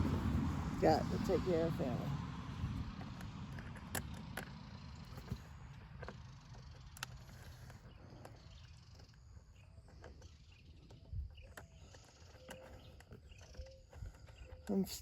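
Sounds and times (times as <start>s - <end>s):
low rumble: 0.0s - 3.0s
faint bird chirps: 7.3s - 15.0s.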